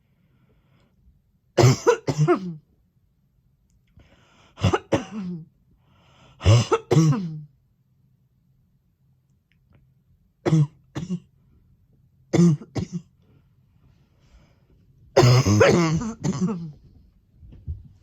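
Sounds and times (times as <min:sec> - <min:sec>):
woman coughing: 0:01.6 - 0:02.6, 0:04.6 - 0:05.5, 0:06.4 - 0:07.5, 0:10.5 - 0:11.3, 0:12.3 - 0:13.1, 0:15.2 - 0:16.8.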